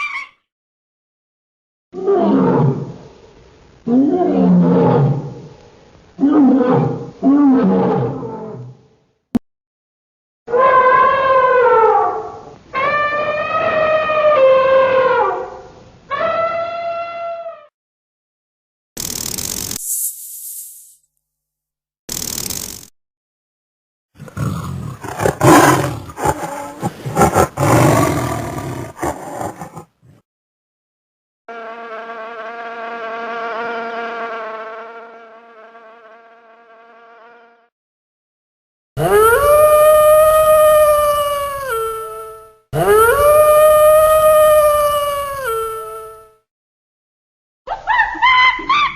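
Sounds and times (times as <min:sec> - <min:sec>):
insect wings buzzing: 0:19.0 - 0:21.0, 0:22.1 - 0:22.9
long pitched animal calls: 0:39.0 - 0:46.4.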